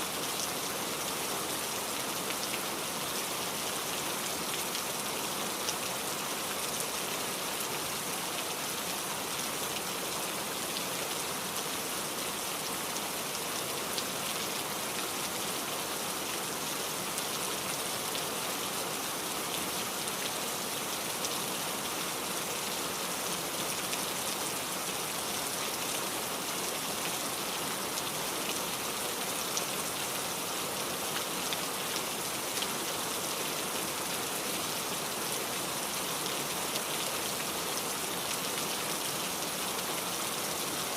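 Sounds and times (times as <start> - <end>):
steady rain pattering: 0.0 - 40.9.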